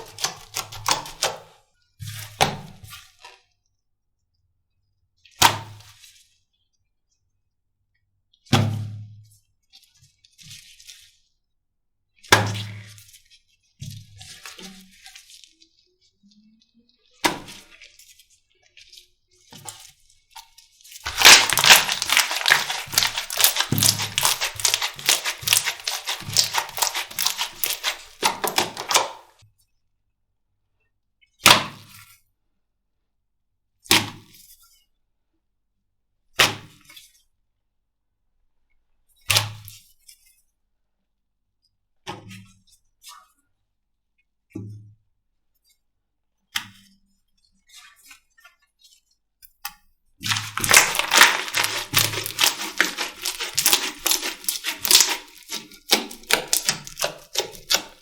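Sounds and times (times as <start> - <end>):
rapid crackling pops of slime: 0.0 - 1.4, 21.0 - 29.3, 50.2 - 58.0
squishy slime slaps: 0.0 - 1.4, 21.1 - 29.3, 50.2 - 58.0.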